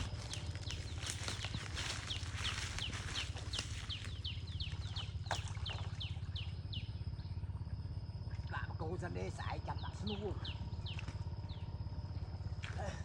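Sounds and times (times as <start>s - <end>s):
bird chirping rapidly: 0.0s - 7.4s, 9.6s - 11.7s
steady low hum: 0.0s - 13.0s.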